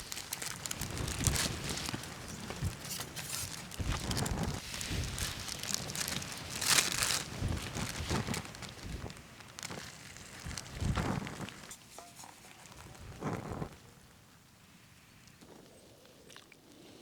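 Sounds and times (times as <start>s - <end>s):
gusty wind buffeting microphone: 0.0s - 9.7s
rain: 0.0s - 11.7s.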